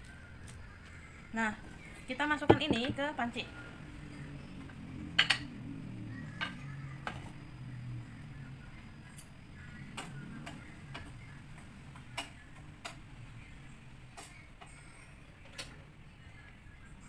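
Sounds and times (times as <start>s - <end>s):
utensil tapping cooking pot: 1.6s - 3.2s.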